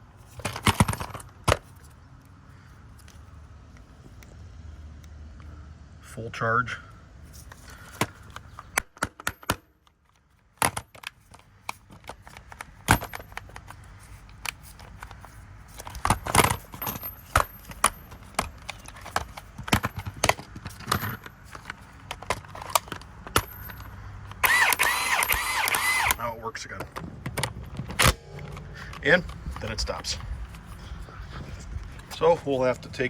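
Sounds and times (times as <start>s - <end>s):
impact wrench clicks and knocks: 7.9s - 30.7s.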